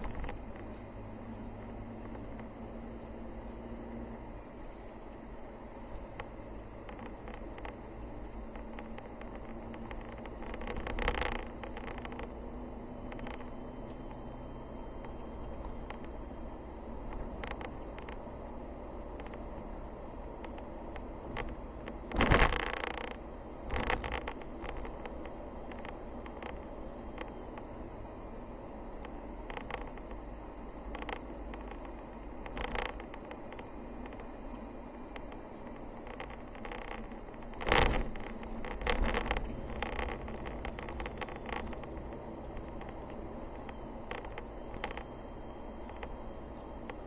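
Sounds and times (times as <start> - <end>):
car driving rumble: 0.0 - 47.0
noisy surges: 0.0 - 47.0
small ticks and rattles: 0.0 - 47.0
knocks and rattling clicks: 21.4 - 26.6, 36.0 - 43.0.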